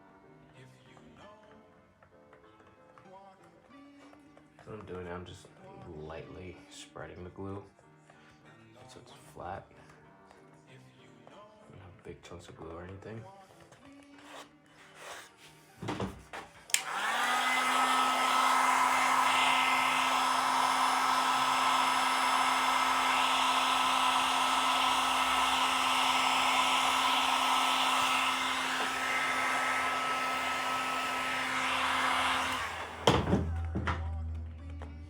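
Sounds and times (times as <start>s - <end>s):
hair dryer switch click: 16.7s - 33.3s
hair dryer blowing: 16.7s - 33.6s.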